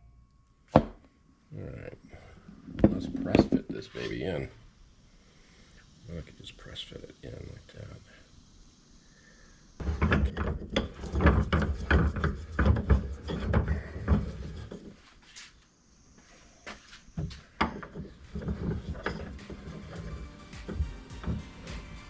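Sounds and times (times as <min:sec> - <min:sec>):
hard objects knocking and clattering: 0:09.8 - 0:14.9, 0:17.2 - 0:22.0.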